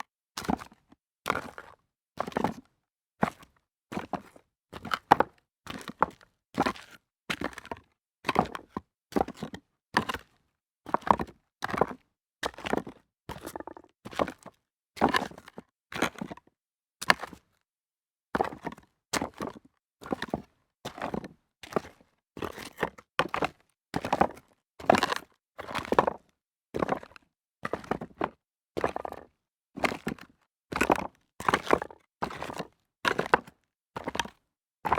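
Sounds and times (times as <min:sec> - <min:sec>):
stones knocking underfoot: 0:13.5 - 0:13.9.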